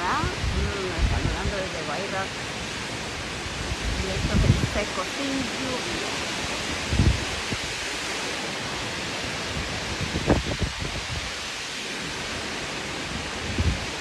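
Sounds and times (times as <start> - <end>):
gusty wind rushing: 0.0 - 14.0
wind buffeting microphone: 0.0 - 14.0.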